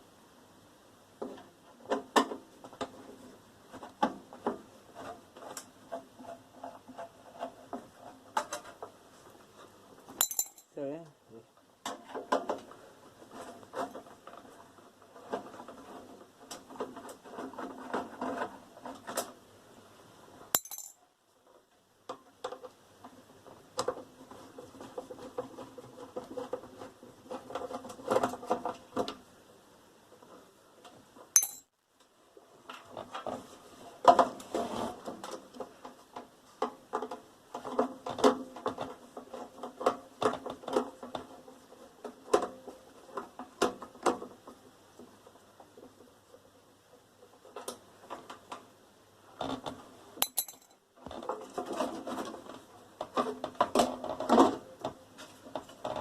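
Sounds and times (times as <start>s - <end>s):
metal parts clinking and clattering: 10.2s - 10.8s, 20.6s - 21.0s, 31.4s - 31.7s, 50.2s - 50.7s.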